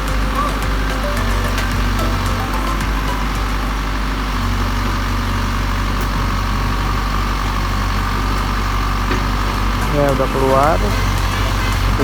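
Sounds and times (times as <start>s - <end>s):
excavator diesel engine running: 0.0s - 12.0s.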